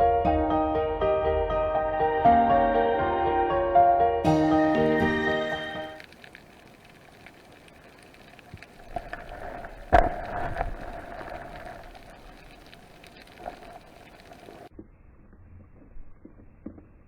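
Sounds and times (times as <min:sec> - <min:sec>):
background music: 0:00.0 - 0:06.0
low steady hiss: 0:04.3 - 0:14.7
small clicks: 0:05.9 - 0:14.7.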